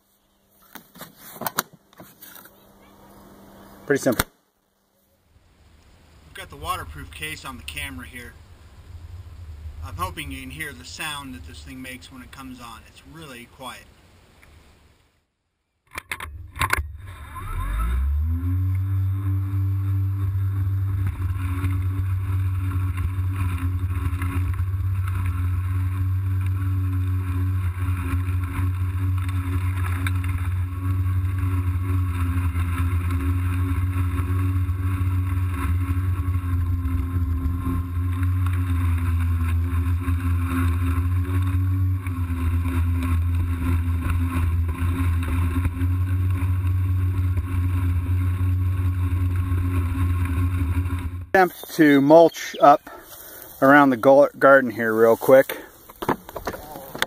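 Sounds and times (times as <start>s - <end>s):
electric lawn mower running: 1.6s - 4.0s, 6.1s - 12.6s, 15.9s - 53.9s.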